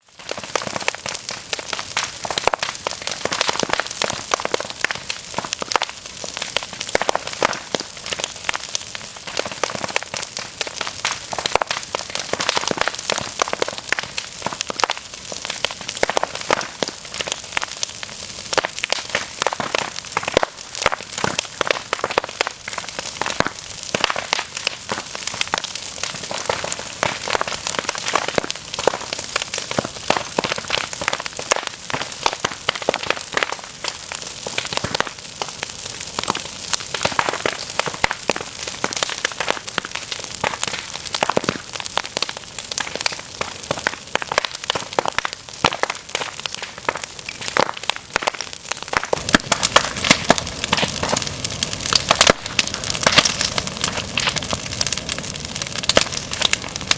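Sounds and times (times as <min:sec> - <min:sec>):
fire crackling: 0:00.0 - 0:56.9.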